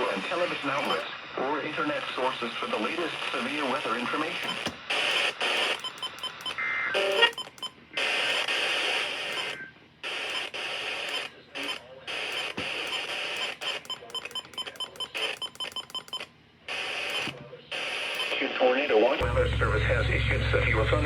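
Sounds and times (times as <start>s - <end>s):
hissy radio static: 0.0s - 5.8s, 8.0s - 14.1s, 16.7s - 21.0s
short electronic beeps: 5.6s - 7.7s, 12.4s - 16.2s.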